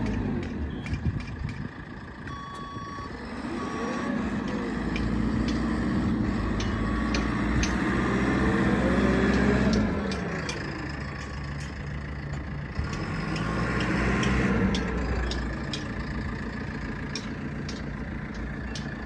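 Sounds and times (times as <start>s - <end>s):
diesel engine revving: 0.0s - 19.0s
reversing alarm beeps: 0.6s - 1.0s, 2.3s - 9.6s.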